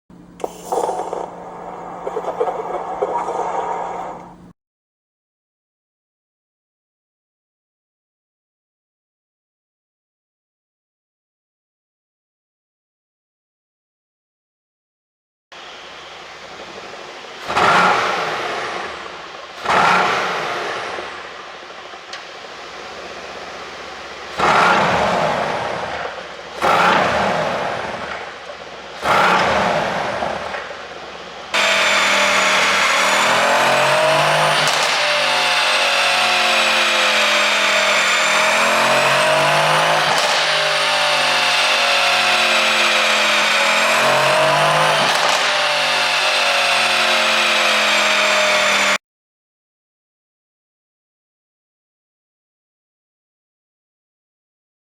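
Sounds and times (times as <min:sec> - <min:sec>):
car engine revving with pops: 0:00.1 - 0:04.5, 0:15.6 - 0:49.0
loud steady engine note: 0:00.1 - 0:04.5, 0:15.6 - 0:49.0.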